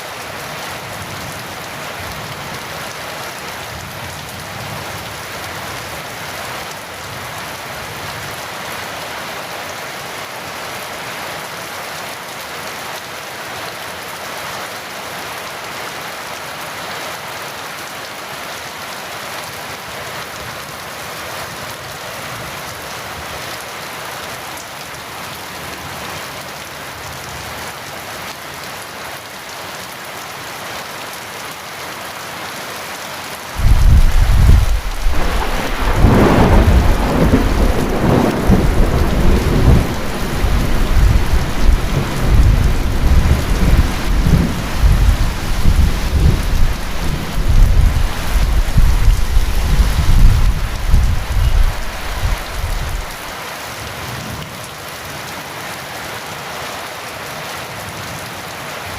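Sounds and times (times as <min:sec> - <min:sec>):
heavy rain falling: 0:00.0 - 0:58.9
thunder crack and rumble: 0:33.6 - 0:53.2.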